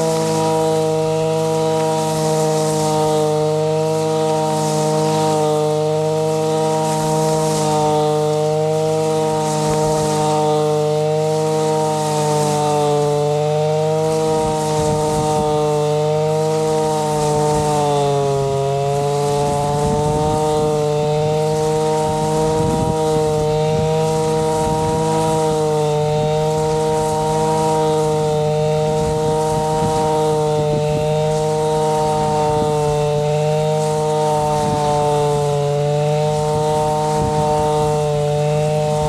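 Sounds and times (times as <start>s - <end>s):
blade chopping through grass: 0.0s - 39.0s
brush cutter engine at high revs: 0.0s - 39.0s.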